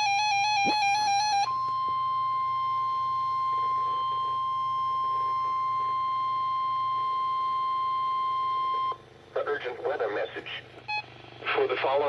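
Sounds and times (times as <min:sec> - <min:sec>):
high-pitched alarm tone: 0:00.0 - 0:09.0.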